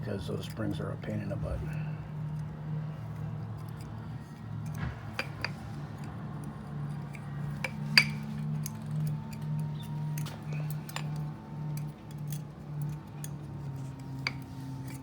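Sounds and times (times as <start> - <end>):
steady low hum: 0.0 - 15.0
metal parts clicking: 3.5 - 15.0.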